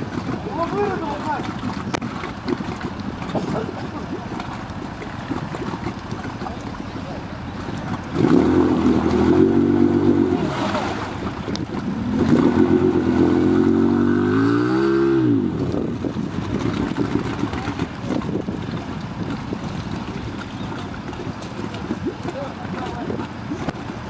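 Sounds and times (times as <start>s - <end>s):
wind on microphone: 0.0s - 24.0s
atv engine revving: 7.6s - 18.3s.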